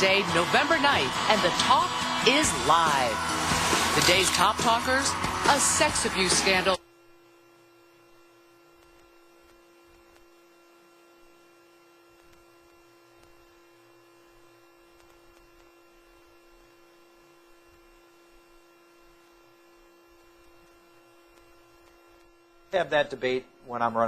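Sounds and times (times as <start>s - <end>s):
faint electrical hum: 6.7s - 24.0s.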